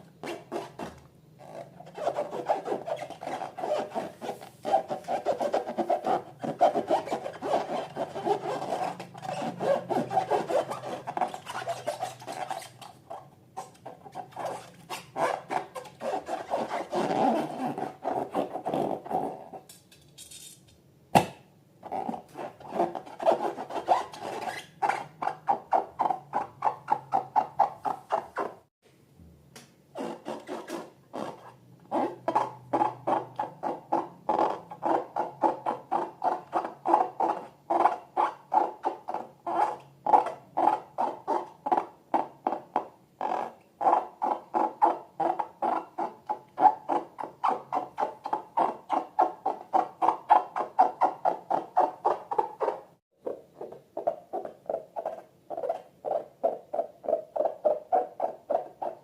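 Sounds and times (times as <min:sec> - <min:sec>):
rapid rhythmic rubbing strokes: 0:01.4 - 0:19.5, 0:53.6 - 0:59.0.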